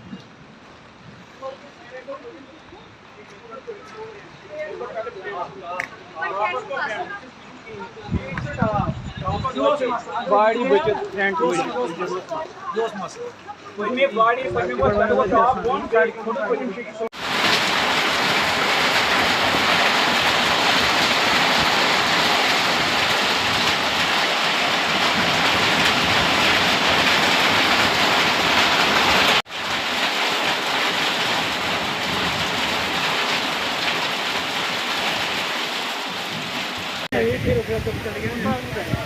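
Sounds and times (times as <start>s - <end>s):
heavy rain hissing: 17.1s - 39.0s.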